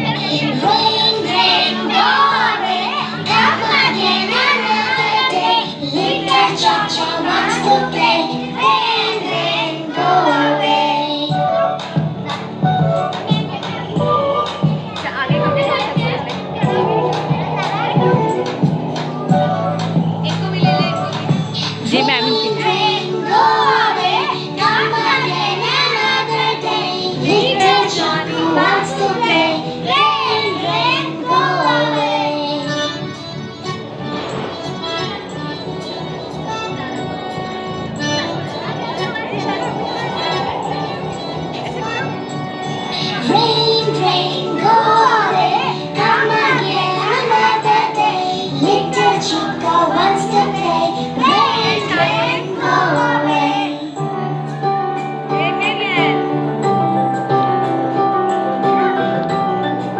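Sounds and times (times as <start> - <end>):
children singing: 0.0 - 54.0
instrumental backing: 0.0 - 59.9
low accompaniment: 11.4 - 26.5, 32.8 - 47.3.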